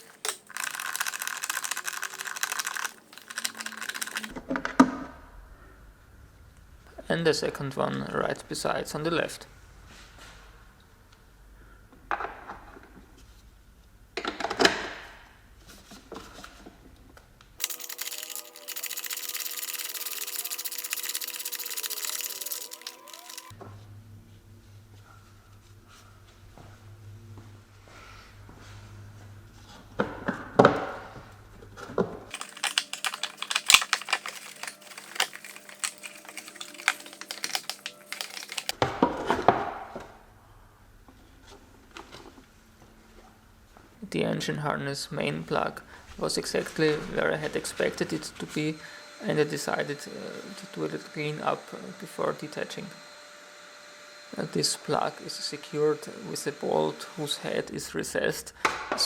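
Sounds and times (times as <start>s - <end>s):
metal tools clinking: 0.0s - 4.3s, 17.6s - 23.5s, 32.3s - 38.7s
metallic clicking and rattling: 0.0s - 4.4s, 17.6s - 23.5s, 32.3s - 38.7s.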